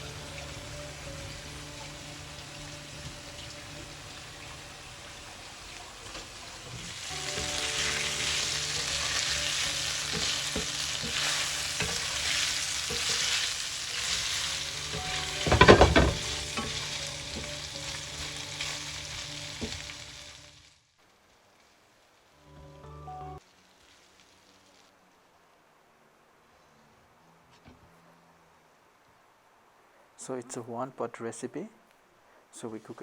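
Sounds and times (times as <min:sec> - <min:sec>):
chicken sizzling in a pot: 0:00.0 - 0:22.5, 0:23.3 - 0:24.9.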